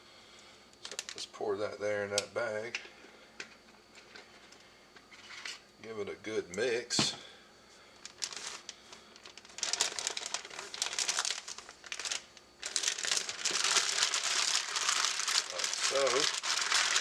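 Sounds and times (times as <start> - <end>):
plastic bag crinkling: 0.8 - 1.3, 8.0 - 17.0.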